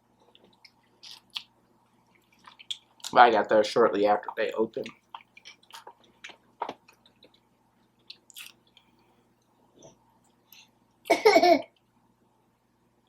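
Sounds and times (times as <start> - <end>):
person chewing with wet smacks: 0.3 - 3.2, 4.2 - 8.9.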